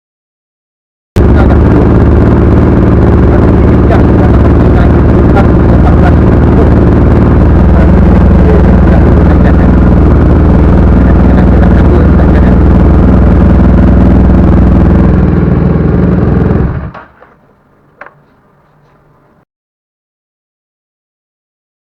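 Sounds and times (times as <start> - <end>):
motorcycle engine running: 1.2 - 19.4.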